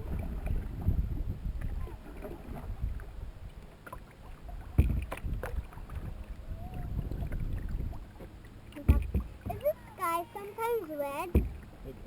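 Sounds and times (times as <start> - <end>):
low wind rumble: 0.0 - 10.2
paddles dipping and splashing: 0.0 - 12.0
sharp knock on canoe: 4.8 - 5.2, 8.8 - 9.6, 11.2 - 11.7.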